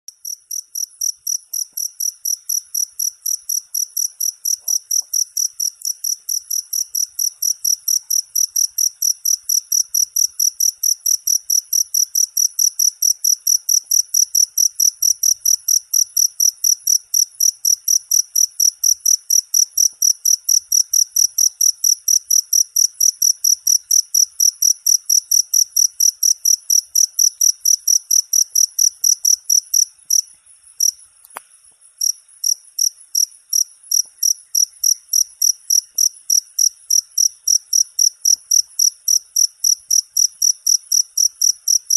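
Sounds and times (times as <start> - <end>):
cricket chirping: 0.1 - 41.9.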